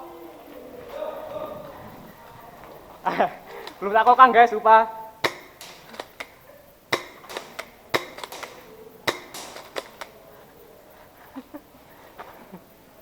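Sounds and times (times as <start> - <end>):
airsoft gun clacks and snaps: 3.4 - 4.2, 5.2 - 6.4, 7.0 - 10.3.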